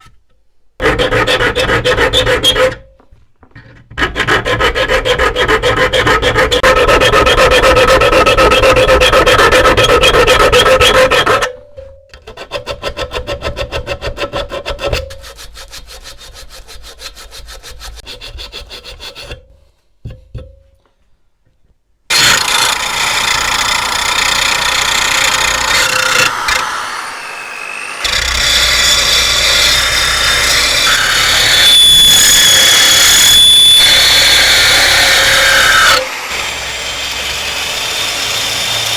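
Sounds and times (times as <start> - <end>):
hand tool rasping on metal: 0.8 - 2.9, 3.5 - 11.5, 12.2 - 19.6, 28.0 - 36.1.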